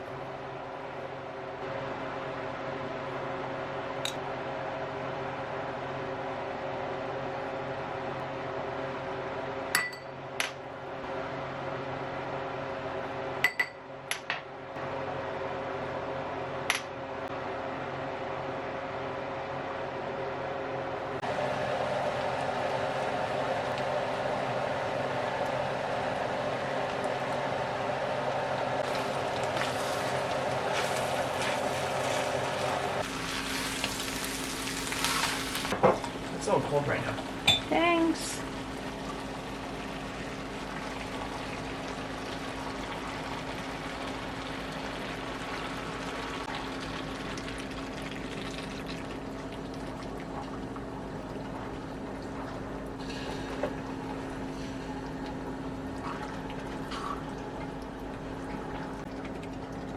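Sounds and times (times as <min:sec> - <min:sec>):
fan hum: 0:00.0 - 0:59.9
food sizzling in a pot: 0:28.8 - 0:36.5.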